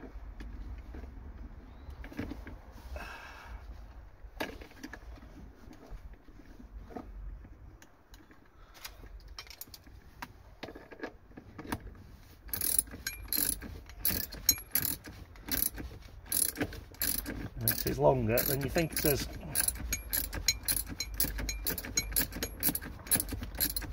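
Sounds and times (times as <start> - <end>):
ratchet wrench clicking: 12.5 - 23.9.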